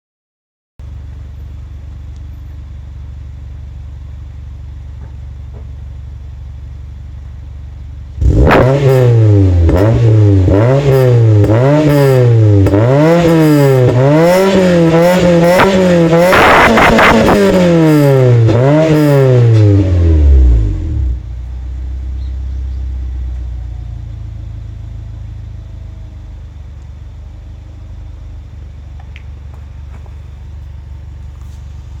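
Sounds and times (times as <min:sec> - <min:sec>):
car engine idling: 0:00.8 - 0:08.5, 0:19.9 - 0:32.0
car engine revving: 0:08.1 - 0:32.0.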